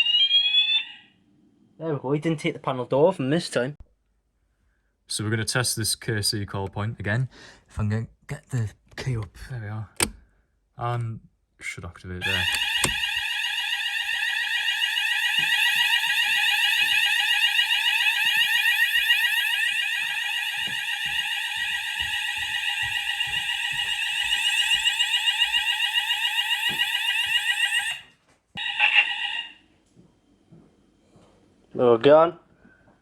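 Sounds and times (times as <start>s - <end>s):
fire alarm warbling tone: 0.0s - 1.2s, 12.2s - 29.6s.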